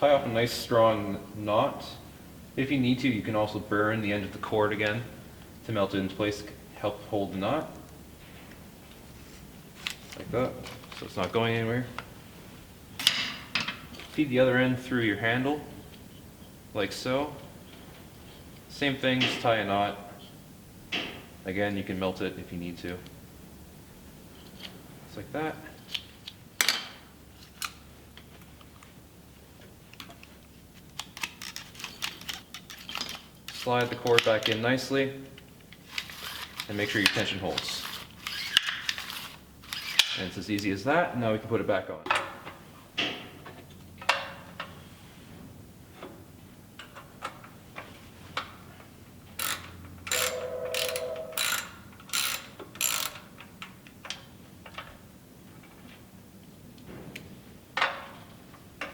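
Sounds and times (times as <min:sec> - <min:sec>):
ratchet clicking: 0:49.4 - 0:53.3.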